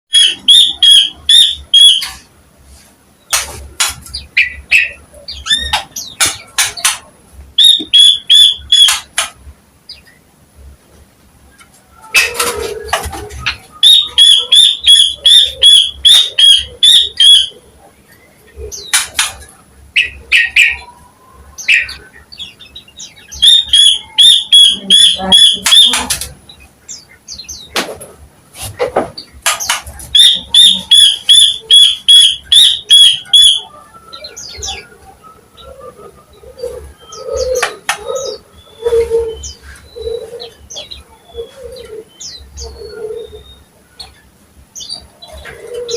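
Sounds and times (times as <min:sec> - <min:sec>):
bird singing high notes: 0:23.2 - 0:26.1.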